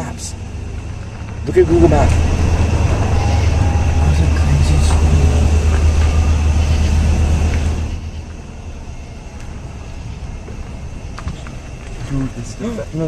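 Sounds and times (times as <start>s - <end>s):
car engine and road rumble: 0.0s - 13.0s.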